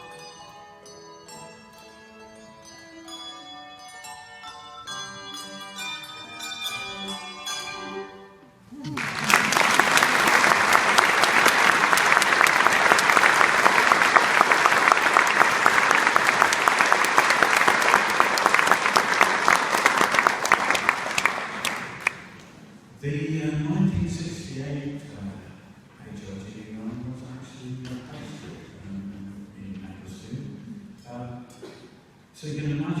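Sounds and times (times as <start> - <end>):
audience applause: 9.0 - 22.4.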